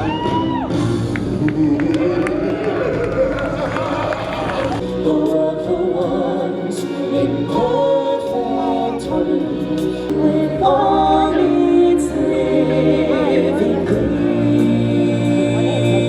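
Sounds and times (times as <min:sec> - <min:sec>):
choir singing with accompaniment: 0:03.9 - 0:16.0.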